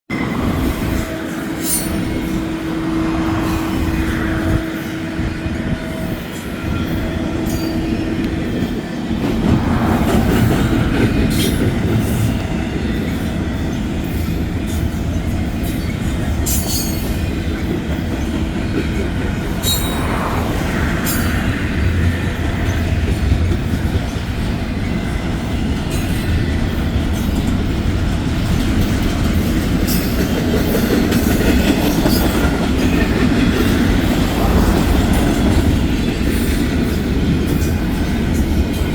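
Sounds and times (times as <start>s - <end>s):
locomotive rumble: 0.1s - 38.9s
rail clicks: 0.1s - 38.9s
steady tone: 18.4s - 23.6s.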